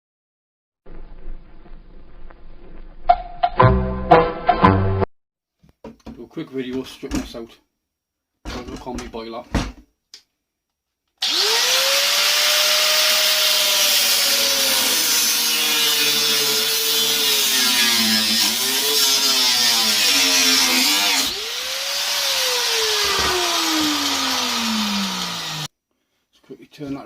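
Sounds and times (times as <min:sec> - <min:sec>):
angle grinder cutting metal: 0:11.2 - 0:25.7.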